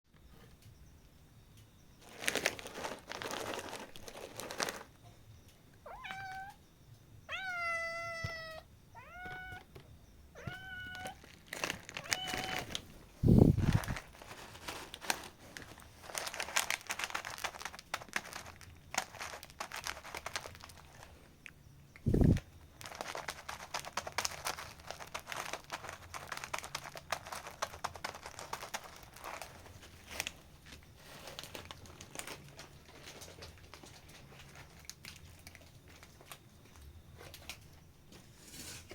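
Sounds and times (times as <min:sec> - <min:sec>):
cat crunching food: 0:02.0 - 0:05.0, 0:13.5 - 0:30.4, 0:31.1 - 0:36.8
cat meowing: 0:05.8 - 0:06.6, 0:07.3 - 0:09.7, 0:10.3 - 0:11.3, 0:12.0 - 0:12.8.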